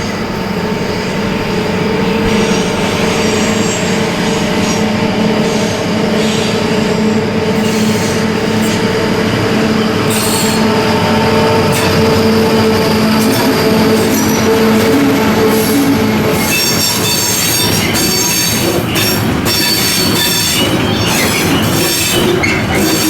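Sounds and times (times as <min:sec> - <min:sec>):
diesel locomotive engine hum: 0:00.0 - 0:23.0
high-pitched wheel squeals: 0:09.8 - 0:23.0.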